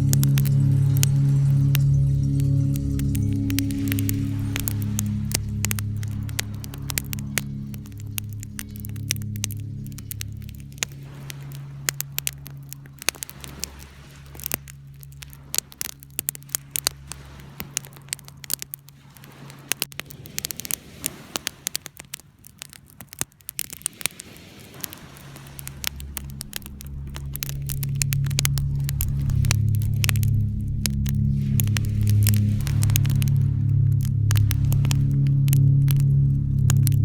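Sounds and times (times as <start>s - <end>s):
low electrical hum: 0.0s - 19.1s, 25.4s - 37.0s
wood fire crackling and popping: 0.0s - 37.0s.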